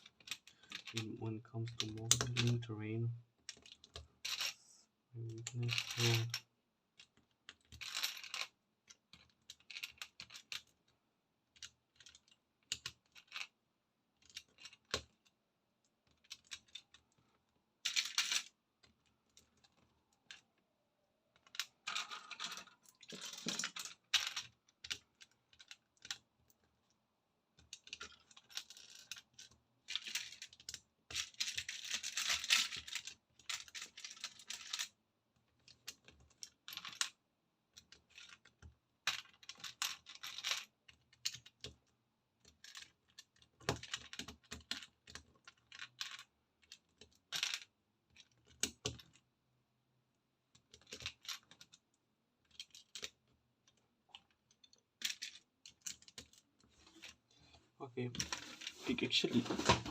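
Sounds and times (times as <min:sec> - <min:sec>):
plastic bricks clicking and clattering: 0:00.0 - 0:02.7, 0:05.2 - 0:06.4, 0:07.0 - 0:10.9, 0:11.5 - 0:13.6, 0:14.2 - 0:20.5, 0:21.3 - 0:26.9, 0:27.6 - 0:34.9, 0:35.5 - 0:49.2, 0:50.5 - 0:57.1.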